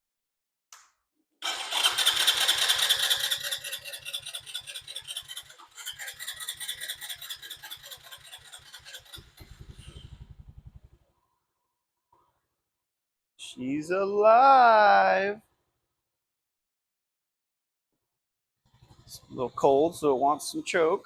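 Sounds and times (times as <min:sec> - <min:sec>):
engine firing: 0:01.4 - 0:03.5, 0:09.1 - 0:11.2
electric starter cranking engine: 0:01.4 - 0:11.1, 0:18.7 - 0:20.4.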